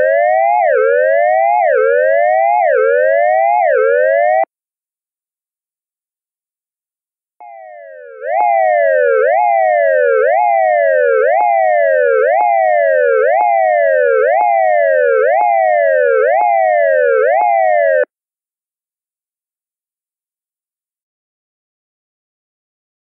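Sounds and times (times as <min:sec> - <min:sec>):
electronic wail siren: 0:00.0 - 0:04.5, 0:07.4 - 0:18.1.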